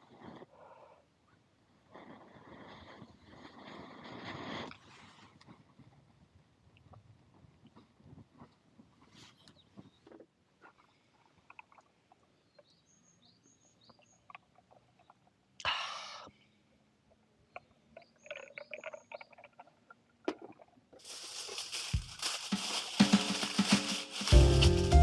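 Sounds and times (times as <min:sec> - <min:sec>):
small birds chirping: 0:11.6 - 0:15.4, 0:21.1 - 0:22.8
loud steady hiss: 0:21.0 - 0:25.0.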